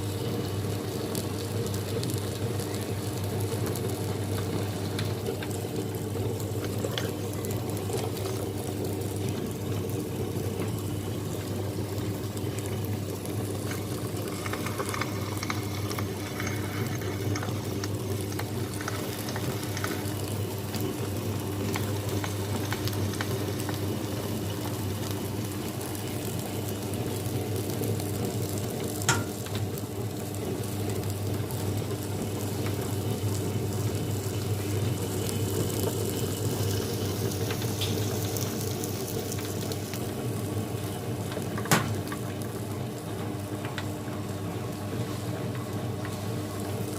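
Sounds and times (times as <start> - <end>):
wet grinder motor humming: 10.4 - 24.8.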